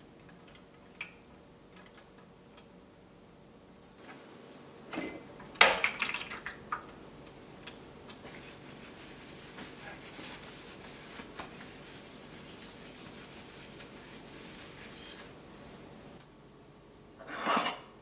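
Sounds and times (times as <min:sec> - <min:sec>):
kitchenware clinking and clattering: 0:04.9 - 0:06.3, 0:17.2 - 0:17.9.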